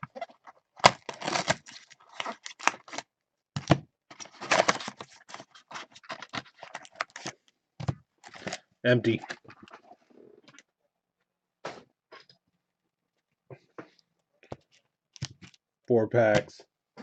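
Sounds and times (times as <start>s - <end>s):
wrapper and cardboard crinkling: 0.0s - 3.1s, 4.1s - 7.5s, 8.2s - 10.6s.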